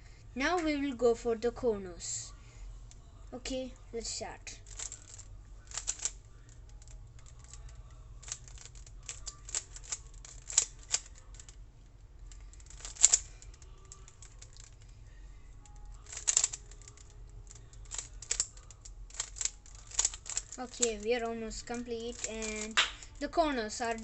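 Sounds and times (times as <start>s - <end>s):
puzzle cube plastic clicks: 4.7s - 11.6s, 12.3s - 14.8s, 15.7s - 23.3s.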